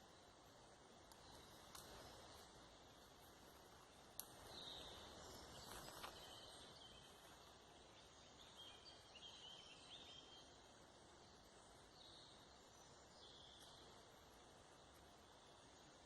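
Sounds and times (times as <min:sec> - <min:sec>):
distant birds chirping: 0:00.0 - 0:16.0.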